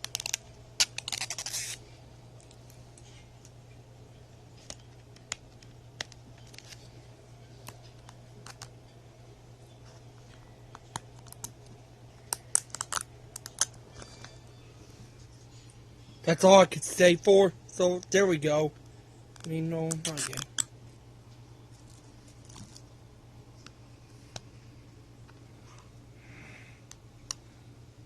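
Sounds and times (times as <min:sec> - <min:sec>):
wrapping crackling: 0:00.0 - 0:01.8, 0:10.3 - 0:14.2, 0:21.7 - 0:23.0.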